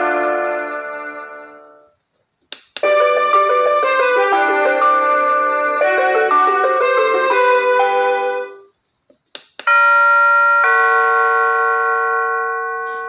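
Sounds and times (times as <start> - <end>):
doorbell chime melody: 0.0 - 1.9, 2.8 - 8.6, 9.7 - 13.0
two-note ding-dong chime: 12.1 - 13.0.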